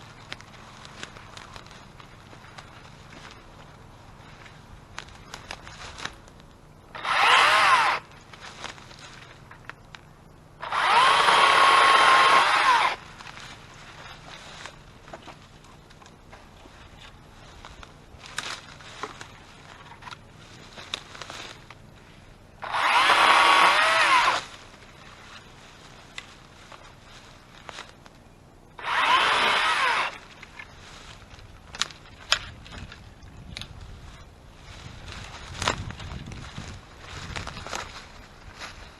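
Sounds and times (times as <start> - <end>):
light snaps and crackles: 0.2 - 3.7, 4.4 - 6.6, 8.3 - 10.1, 17.0 - 21.8, 30.3 - 33.8
electric chainsaw whining: 6.9 - 8.1, 10.6 - 13.0, 22.6 - 24.5, 28.8 - 30.3.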